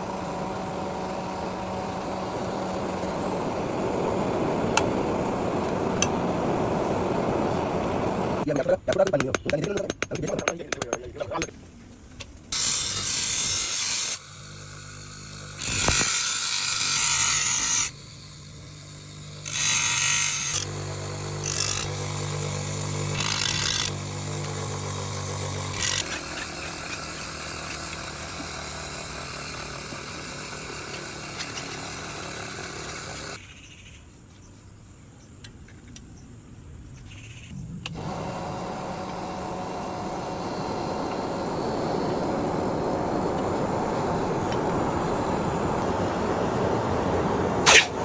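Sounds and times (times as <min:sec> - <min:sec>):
electric grinder motor hum: 0:00.0 - 0:08.4, 0:12.6 - 0:33.4, 0:37.8 - 0:48.0
grinder grinding steel blade: 0:08.3 - 0:11.6, 0:12.5 - 0:33.4.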